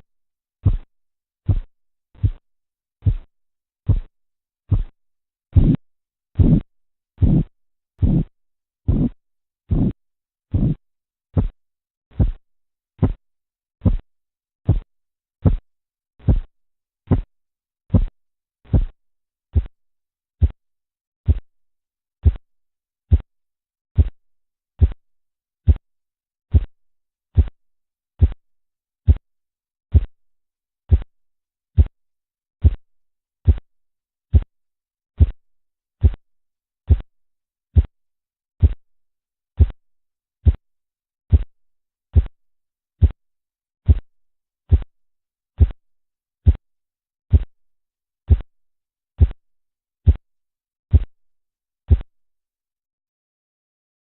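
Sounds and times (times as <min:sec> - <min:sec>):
pulse thumps through stethoscope: 0:00.6 - 0:02.4, 0:03.0 - 0:03.3, 0:03.9 - 0:04.1, 0:04.7 - 0:05.8, 0:06.4 - 0:08.3, 0:08.9 - 0:10.8, 0:11.4 - 0:12.4, 0:13.0 - 0:13.2, 0:13.8 - 0:14.0, 0:14.7 - 0:15.6, 0:16.2 - 0:16.5, 0:17.1 - 0:17.3, 0:17.9 - 0:18.1, 0:18.7 - 0:19.0, 0:19.6 - 0:19.8, 0:20.4 - 0:20.6, 0:21.3 - 0:21.5, 0:22.2 - 0:22.4, 0:23.1 - 0:23.3, 0:24.0 - 0:24.2, 0:24.8 - 0:25.0, 0:26.5 - 0:26.7, 0:28.2 - 0:28.4, 0:29.9 - 0:30.1, 0:30.9 - 0:31.1, 0:34.3 - 0:34.5, 0:36.9 - 0:37.1, 0:38.6 - 0:38.8, 0:39.5 - 0:39.8, 0:43.0 - 0:43.2, 0:46.4 - 0:46.6, 0:47.3 - 0:47.5, 0:48.3 - 0:48.5, 0:50.0 - 0:50.2, 0:50.9 - 0:51.1, 0:51.9 - 0:52.1.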